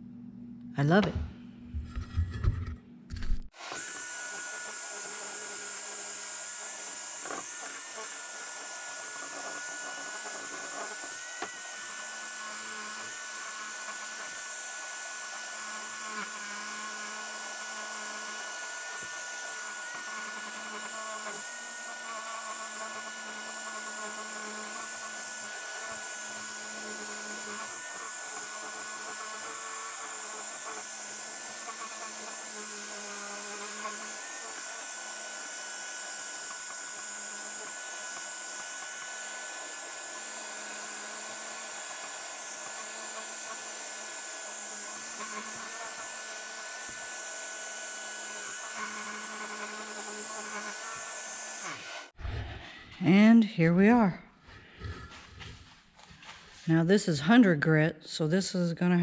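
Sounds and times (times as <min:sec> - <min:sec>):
vacuum running: 0:00.0 - 0:53.0
electric sander whine: 0:03.4 - 0:52.2.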